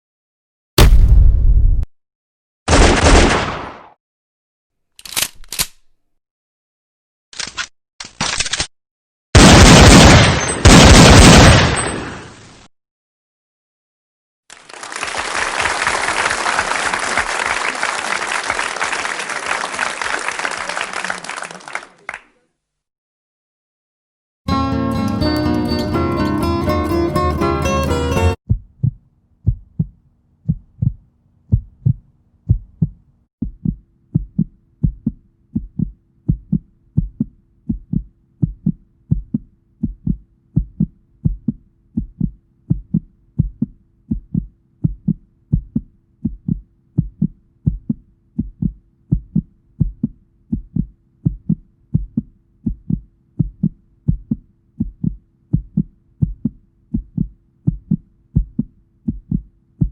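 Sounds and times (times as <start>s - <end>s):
steady low thumps: 28.5s - 59.9s.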